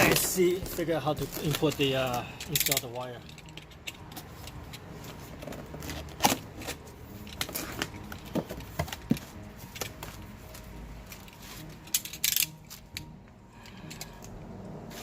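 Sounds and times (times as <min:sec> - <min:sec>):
cardboard box being unpacked: 0:00.0 - 0:02.0.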